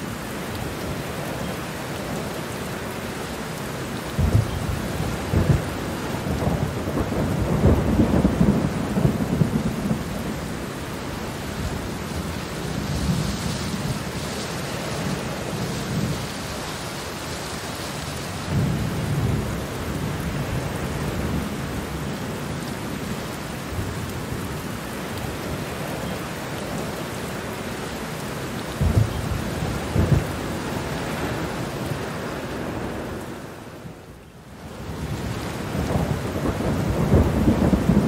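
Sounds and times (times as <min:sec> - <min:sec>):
heavy rain: 0:00.0 - 0:38.0
rolling thunder: 0:04.1 - 0:16.4, 0:18.4 - 0:22.0, 0:28.7 - 0:31.5, 0:34.8 - 0:38.0.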